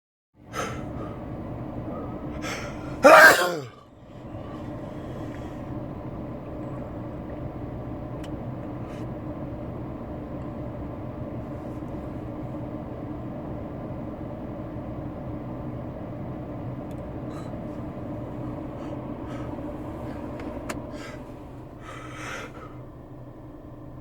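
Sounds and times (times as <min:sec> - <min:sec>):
low car interior hum: 0:00.4 - 0:24.0
sharp intake of breath: 0:00.5 - 0:01.3, 0:01.9 - 0:03.7, 0:18.6 - 0:22.9
man sneezing: 0:02.6 - 0:03.8.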